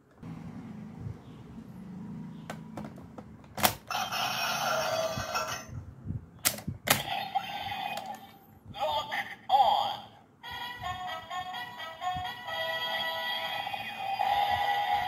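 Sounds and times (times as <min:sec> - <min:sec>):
sharp plastic clicks: 0:06.4 - 0:07.1
toy electronic sound effect: 0:06.9 - 0:08.3.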